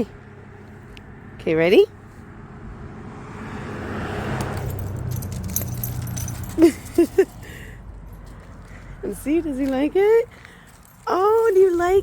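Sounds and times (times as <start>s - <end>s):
vehicle passing: 0.0s - 12.0s
metallic jingling and clicking: 4.4s - 12.0s.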